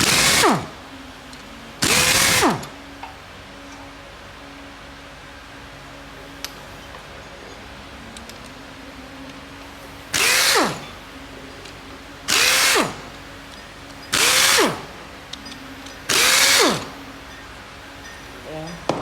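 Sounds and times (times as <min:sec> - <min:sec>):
handheld power tool motor: 0:00.0 - 0:00.8, 0:01.8 - 0:02.8, 0:10.1 - 0:11.0, 0:12.3 - 0:13.2, 0:14.1 - 0:15.0, 0:16.1 - 0:17.0.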